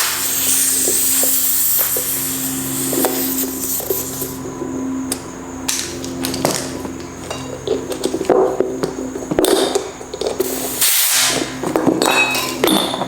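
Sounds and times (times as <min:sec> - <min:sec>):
compressed air hissing into tire: 0:00.0 - 0:04.4, 0:10.4 - 0:11.6
steady low hum: 0:00.0 - 0:13.0.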